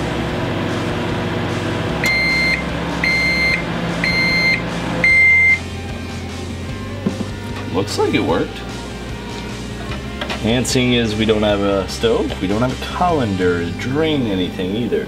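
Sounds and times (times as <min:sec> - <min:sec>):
microwave oven humming: 0:00.0 - 0:14.8
high beeps: 0:02.0 - 0:05.6.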